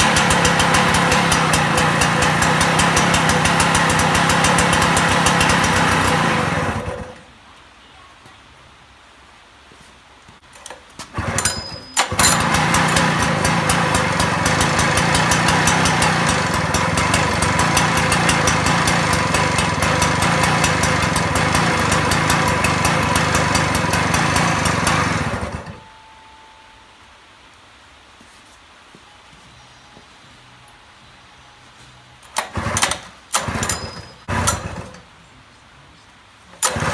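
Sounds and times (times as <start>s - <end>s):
engine pull-start pulls: 0.0s - 7.2s, 10.6s - 25.8s, 32.2s - 35.1s, 36.6s - 36.9s
small two-stroke engine running: 0.0s - 7.2s, 11.1s - 25.9s, 32.3s - 35.0s, 36.6s - 36.9s.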